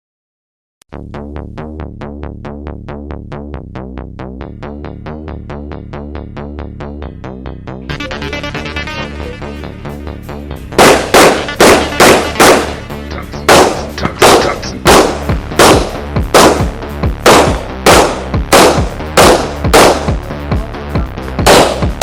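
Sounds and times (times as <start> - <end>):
electronic music: 0.9 - 22.0
pistol shots: 10.8 - 20.2, 21.4 - 22.0.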